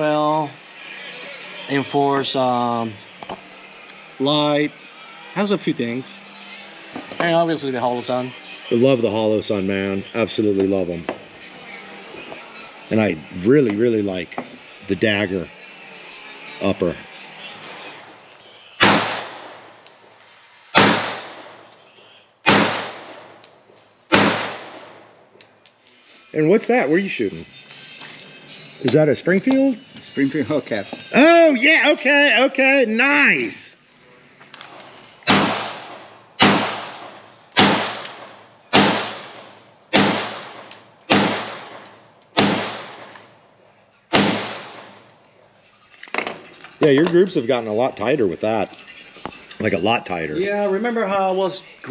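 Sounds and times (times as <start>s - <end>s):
pistol shots with echo: 18.8s - 19.8s, 20.7s - 21.7s, 22.4s - 23.4s, 24.1s - 25.1s, 35.2s - 43.3s, 44.1s - 45.0s.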